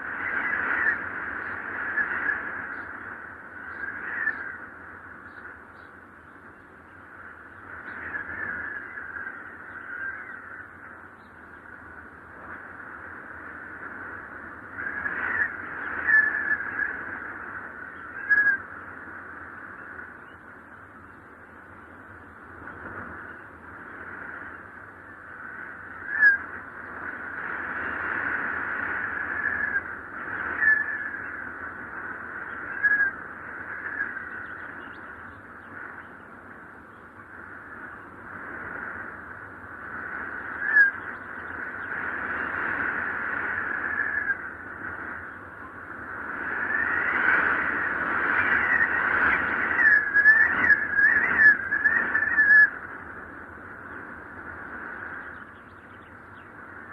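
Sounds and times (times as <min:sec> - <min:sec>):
wind whistling in gusts: 0:00.0 - 0:56.9
sharp squeals: 0:30.5 - 0:31.4, 0:46.6 - 0:52.8.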